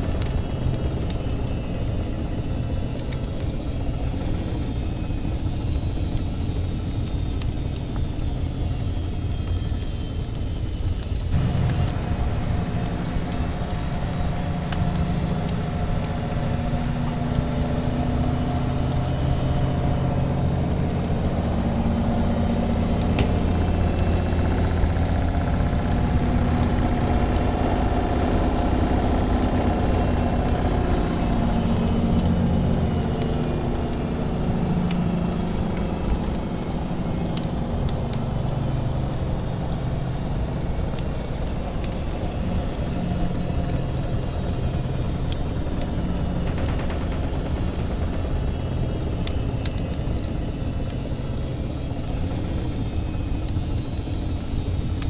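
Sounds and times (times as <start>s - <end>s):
wood fire crackles: 0.0s - 55.0s
washing machine motor hum: 11.3s - 55.0s.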